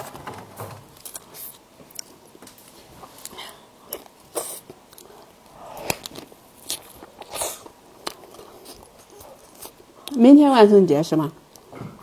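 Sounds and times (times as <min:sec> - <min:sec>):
wet chewing: 0:03.0 - 0:10.2.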